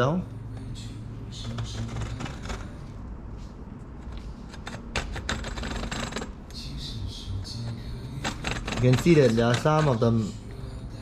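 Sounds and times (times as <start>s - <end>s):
metal cutter clicking and scraping: 8.3s - 10.2s.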